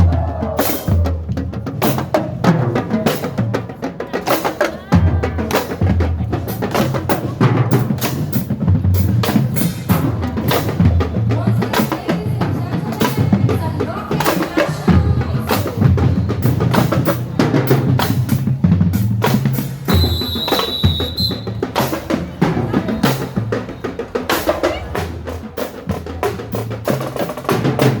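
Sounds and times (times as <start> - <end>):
snare drum hits: 19.9 - 21.9.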